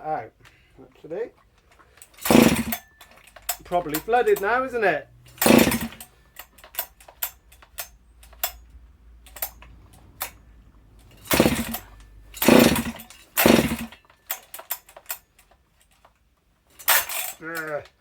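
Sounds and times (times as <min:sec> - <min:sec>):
chainsaw pull-starting: 0:01.6 - 0:08.6, 0:11.0 - 0:15.2, 0:16.8 - 0:17.9.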